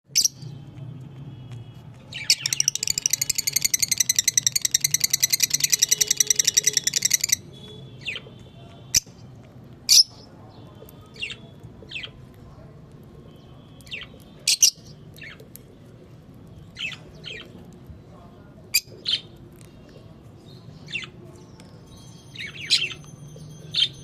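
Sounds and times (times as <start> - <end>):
parrots chirping: 2.1 - 9.2, 13.8 - 15.4.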